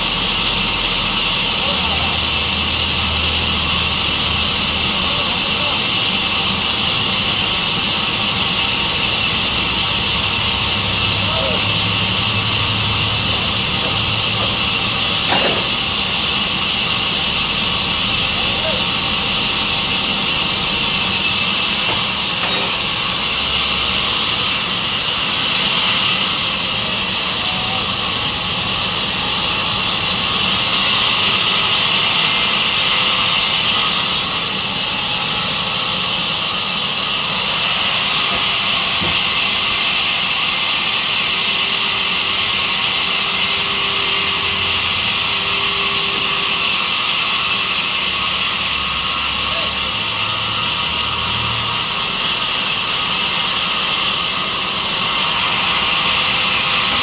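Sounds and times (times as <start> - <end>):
sawmill saw hissing: 0.0 - 57.0.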